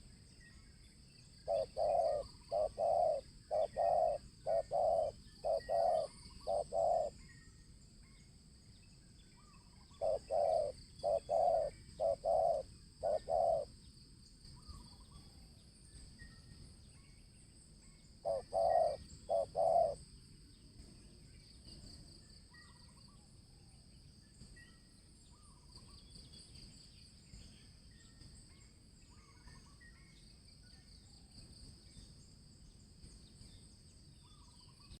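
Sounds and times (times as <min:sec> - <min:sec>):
small birds chirping: 0:00.0 - 0:35.0
dove cooing: 0:01.4 - 0:07.2, 0:09.9 - 0:13.7, 0:18.2 - 0:20.0.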